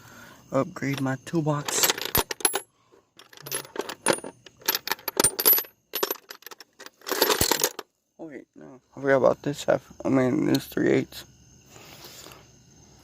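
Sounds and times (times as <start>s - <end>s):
metal tools clattering: 0.8s - 7.8s.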